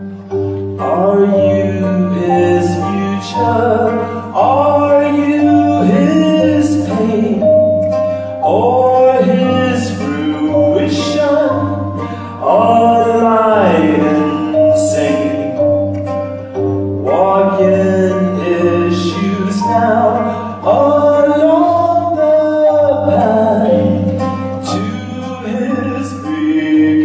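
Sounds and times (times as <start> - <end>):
low bass accompaniment: 0.0 - 25.0.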